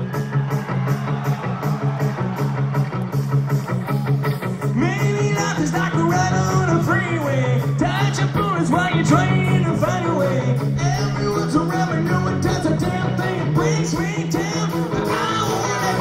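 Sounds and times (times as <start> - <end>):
rock band playing live: 0.0 - 16.0
man singing lead vocal: 4.7 - 16.0.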